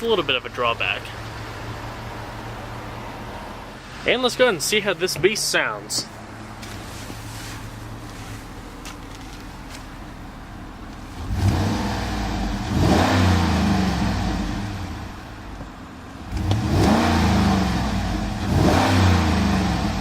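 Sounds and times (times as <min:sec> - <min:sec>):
car engine revving: 0:05.1 - 0:20.0.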